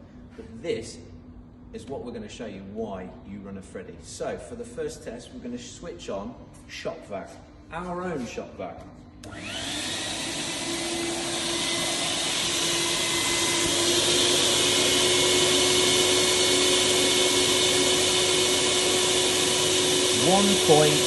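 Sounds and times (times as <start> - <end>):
shop vacuum running: 5.2 - 21.0.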